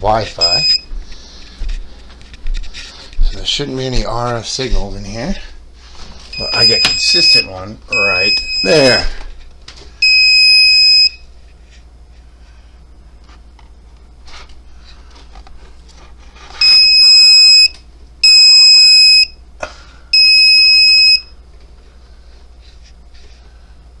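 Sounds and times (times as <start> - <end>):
detector alarm beeping: 0.4 - 0.9, 6.3 - 9.2, 10.0 - 11.3, 16.6 - 19.4, 20.1 - 21.4.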